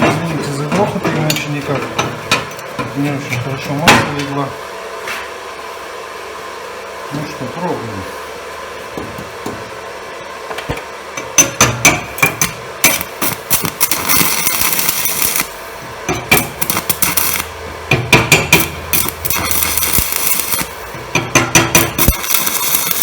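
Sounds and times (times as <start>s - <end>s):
welding arc crackling: 10.6s - 23.0s
welding rod striking plate: 10.7s - 23.0s.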